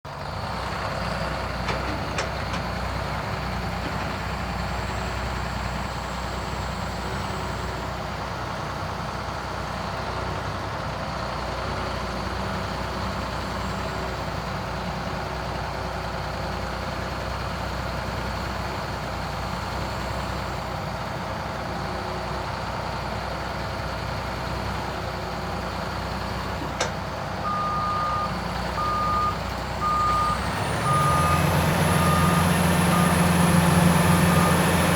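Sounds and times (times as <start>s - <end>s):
excavator diesel engine running: 0.1s - 34.9s
travel alarm beeping: 27.4s - 31.4s.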